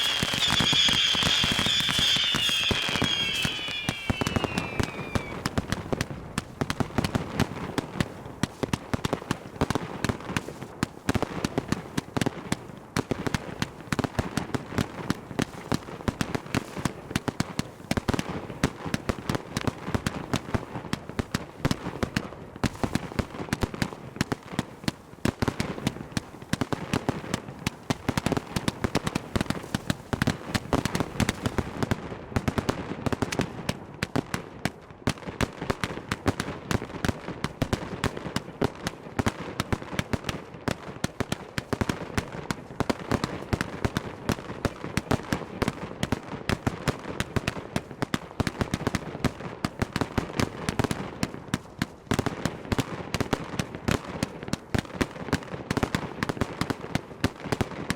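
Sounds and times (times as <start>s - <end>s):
fireworks barrage of bangs: 0.0s - 6.0s.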